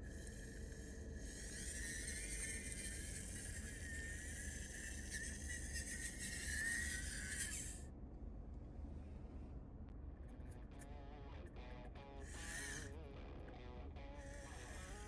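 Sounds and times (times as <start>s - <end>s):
small electric motor whining: 0.0s - 7.8s, 12.2s - 13.0s, 14.2s - 15.0s.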